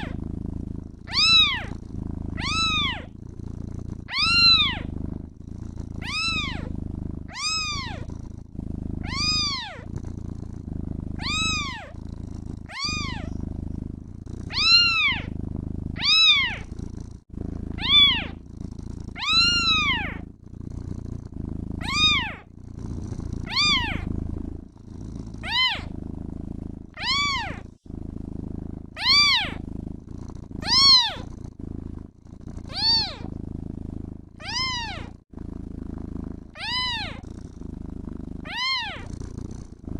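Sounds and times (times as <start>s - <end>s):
cat purring: 0.0s - 39.9s
kitten meowing: 1.1s - 1.7s, 2.4s - 3.1s, 4.1s - 4.9s, 6.0s - 6.7s, 7.3s - 8.1s, 9.0s - 9.9s, 11.2s - 12.0s, 12.7s - 13.4s, 14.5s - 15.3s, 16.0s - 16.6s, 17.8s - 18.4s, 19.2s - 20.2s, 21.8s - 22.4s, 23.5s - 24.1s, 25.4s - 25.9s, 27.0s - 27.6s, 29.0s - 29.6s, 30.6s - 31.2s, 32.7s - 33.3s, 34.4s - 35.1s, 36.6s - 37.2s, 38.4s - 39.1s.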